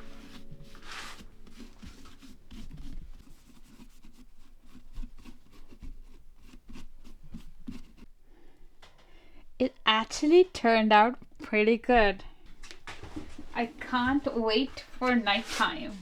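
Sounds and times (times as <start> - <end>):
hand tool scraping pumpkin: 0.0 - 8.1, 13.6 - 16.0.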